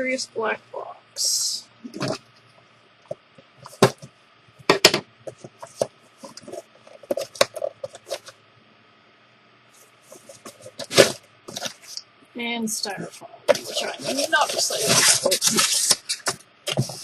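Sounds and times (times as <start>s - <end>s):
packaging handled and opened: 10.1s - 12.0s, 13.5s - 17.0s.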